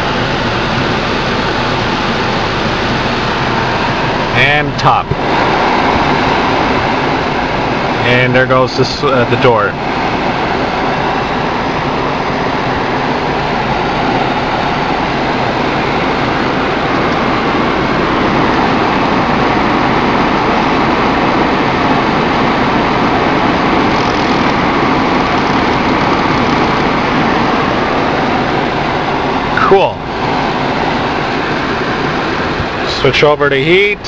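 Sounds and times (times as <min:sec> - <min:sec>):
blower fan rushing air: 0:00.0 - 0:34.0.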